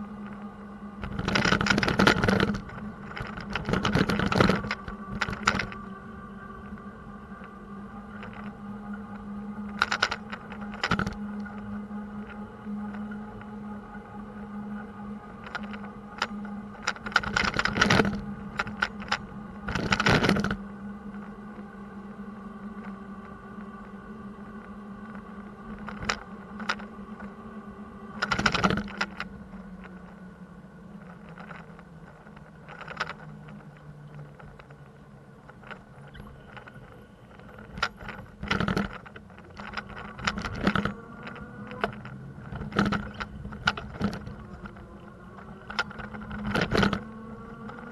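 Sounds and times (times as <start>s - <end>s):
steady hum: 0.0s - 47.9s
bicycle rattling over bumps: 1.0s - 5.8s, 9.7s - 11.2s, 15.4s - 20.6s, 31.0s - 34.8s, 35.4s - 47.9s.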